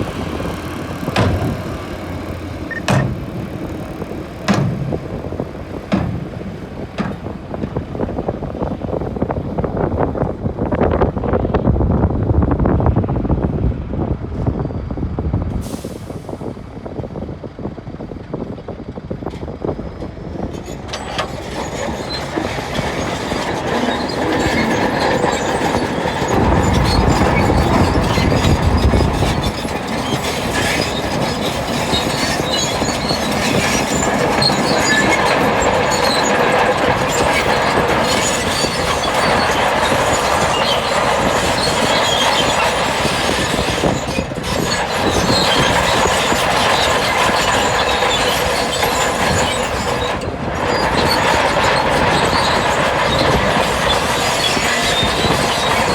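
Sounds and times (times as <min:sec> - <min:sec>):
crawler tracks squealing and clanking: 0:00.0 - 0:11.3, 0:18.3 - 0:55.9
bulldozer engine running: 0:00.0 - 0:55.9.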